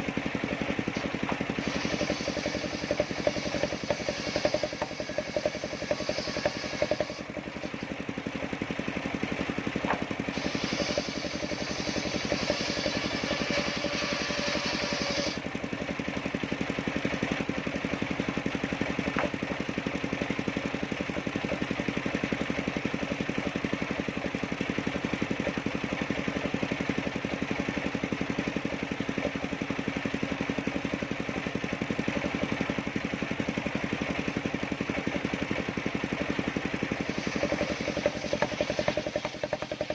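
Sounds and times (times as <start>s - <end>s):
saw blade cutting timber: 0.0s - 8.6s, 9.4s - 15.5s, 18.8s - 19.8s, 33.9s - 39.9s
sawmill engine running: 0.0s - 39.9s.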